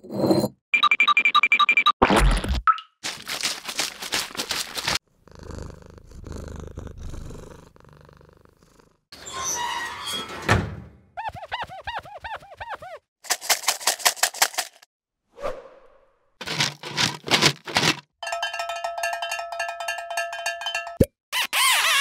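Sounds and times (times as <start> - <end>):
low purring rumble: 5.2 - 9.0
squeaky chirps: 11.2 - 13.1, 21.3 - 22.0.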